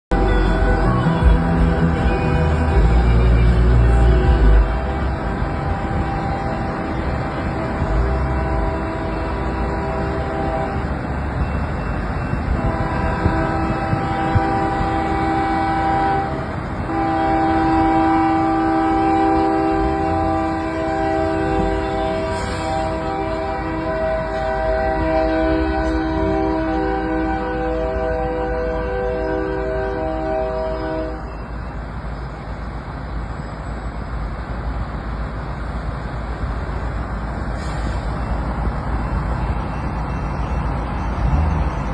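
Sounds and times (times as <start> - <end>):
locomotive air horn: 0.1 - 31.6, 37.5 - 38.4
train rumbling: 0.1 - 41.9.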